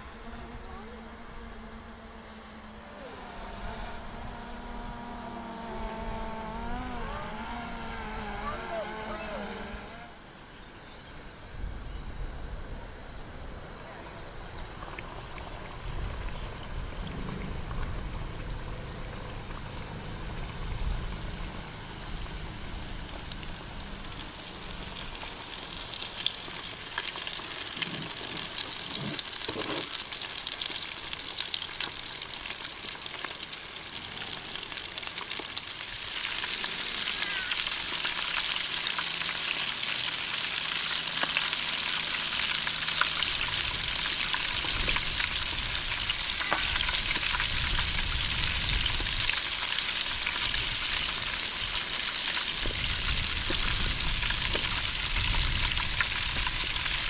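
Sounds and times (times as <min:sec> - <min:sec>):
chicken deep-frying in oil: 0:14.4 - 0:57.0.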